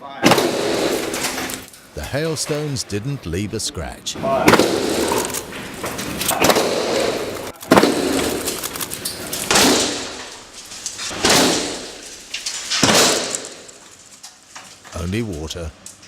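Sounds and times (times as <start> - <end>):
hailstones smashing into glass: 0.3 - 2.0, 4.7 - 14.9.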